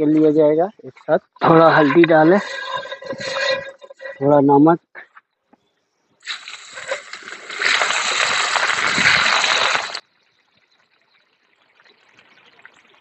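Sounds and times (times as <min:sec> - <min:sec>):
prawns sizzling in hot oil: 0:06.2 - 0:10.0.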